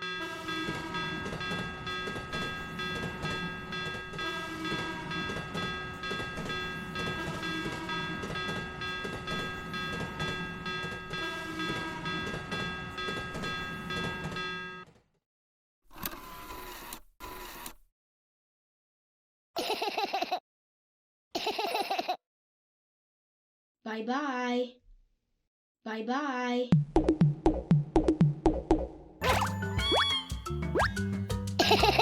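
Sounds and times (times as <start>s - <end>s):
train clattering: 0.0s - 14.8s.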